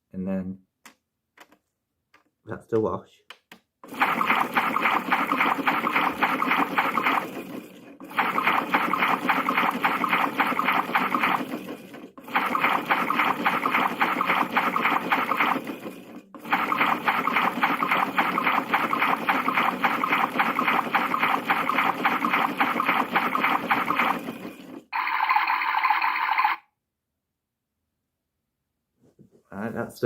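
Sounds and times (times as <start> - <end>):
toy washing machine sloshing: 3.8 - 26.6.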